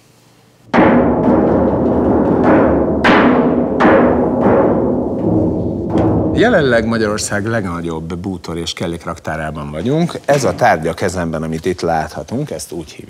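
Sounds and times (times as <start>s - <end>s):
metal thunder sheet rumbling: 0.7s - 8.2s.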